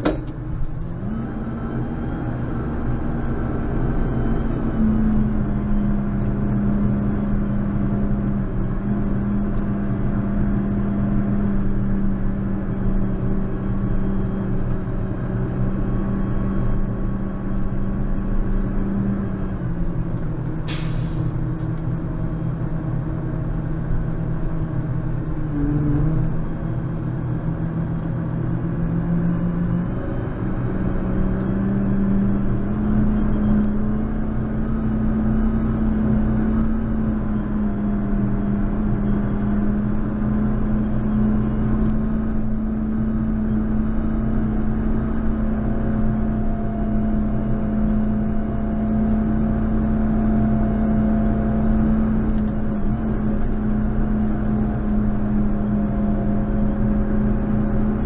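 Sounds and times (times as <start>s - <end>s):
tractor diesel engine running: 0.0s - 58.0s
sharp hiss: 20.7s - 21.4s.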